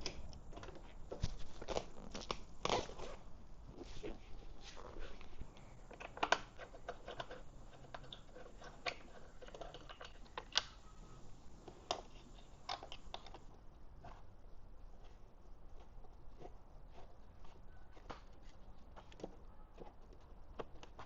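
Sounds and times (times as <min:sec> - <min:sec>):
small parts and tools clicking: 0:05.2 - 0:11.0, 0:11.6 - 0:13.7.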